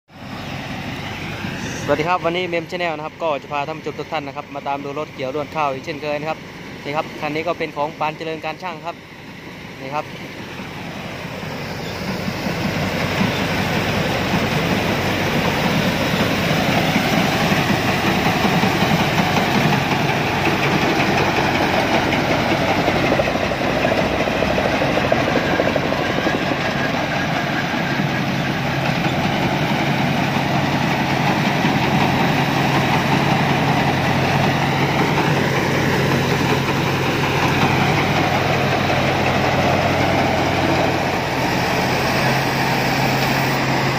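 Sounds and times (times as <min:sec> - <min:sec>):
combine harvester engine running: 0:00.1 - 0:43.9.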